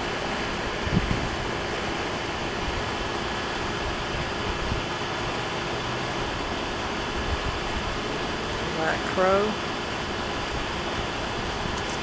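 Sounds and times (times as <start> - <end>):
wind on microphone: 0.8 - 1.6.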